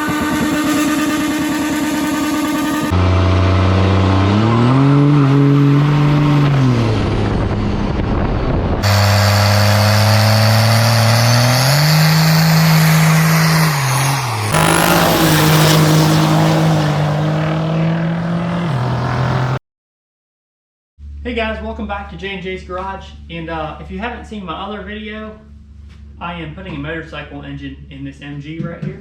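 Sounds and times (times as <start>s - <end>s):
vehicle engine revving: 0.0s - 19.6s.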